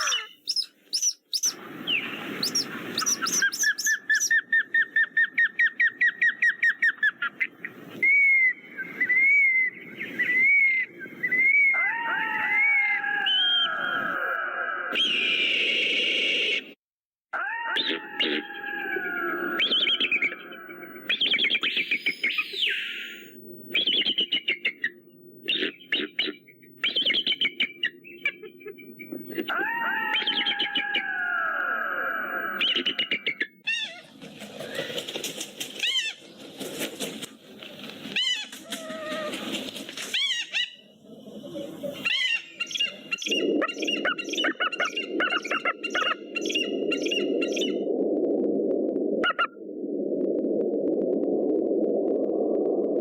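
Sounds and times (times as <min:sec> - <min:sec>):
bird of prey chattering calls: 0:00.0 - 0:01.6, 0:02.4 - 0:04.4
bird of prey calling: 0:00.0 - 0:07.2, 0:17.4 - 0:34.0, 0:42.0 - 0:47.8.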